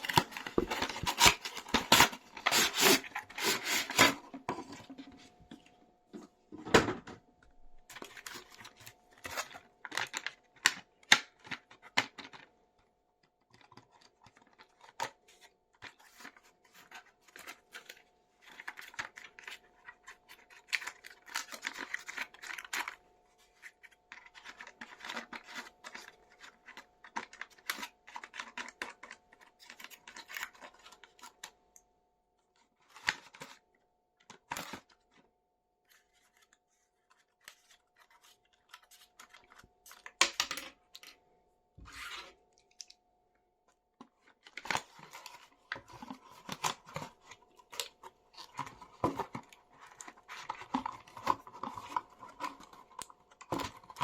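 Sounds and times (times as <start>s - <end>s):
packaging rustling and tearing: 0.0s - 5.0s, 7.9s - 12.5s, 13.6s - 31.5s, 44.1s - 54.0s.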